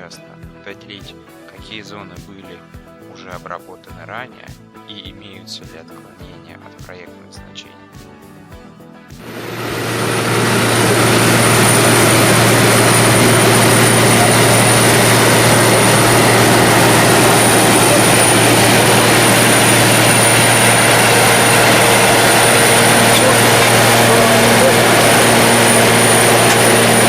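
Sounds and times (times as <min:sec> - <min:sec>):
milling machine din: 0:09.2 - 0:27.0
faint high whine: 0:09.3 - 0:27.0.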